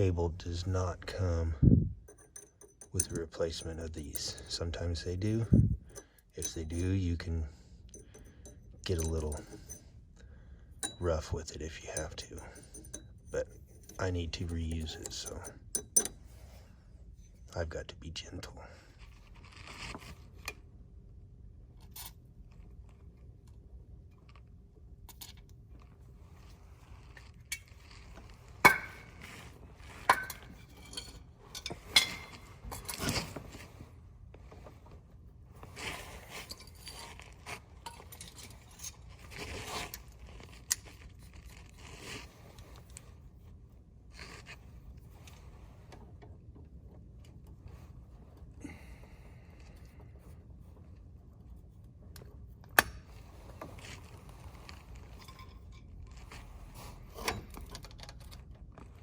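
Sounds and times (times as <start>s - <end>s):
hand tools clinking on metal: 2.1s - 9.9s, 10.8s - 16.2s, 28.6s - 29.4s, 30.0s - 33.4s.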